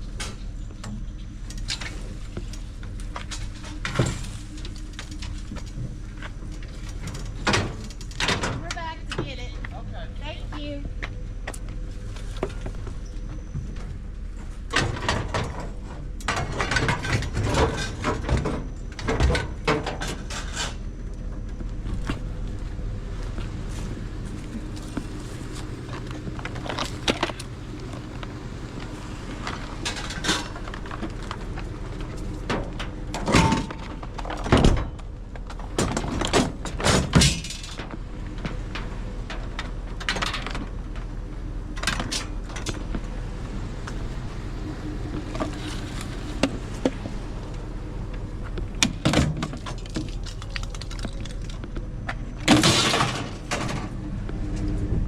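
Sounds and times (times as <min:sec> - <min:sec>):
vehicle engine idling: 0:00.0 - 0:55.0
scrap metal clanking: 0:23.6 - 0:34.9.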